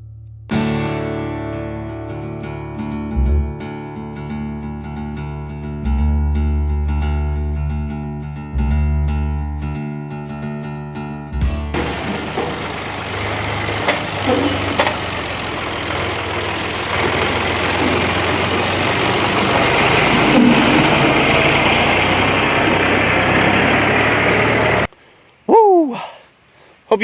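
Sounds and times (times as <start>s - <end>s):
tractor engine running: 3.2s - 3.6s, 11.4s - 24.9s.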